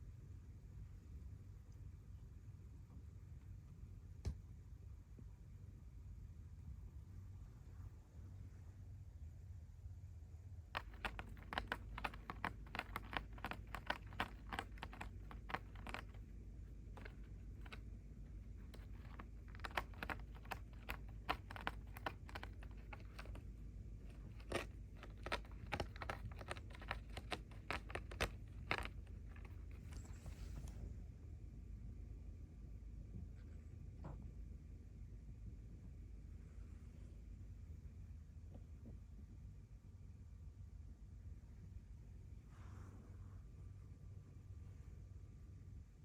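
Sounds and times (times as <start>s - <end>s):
quick irregular clicks: 10.8s - 30.3s
kitten purring: 10.8s - 30.8s.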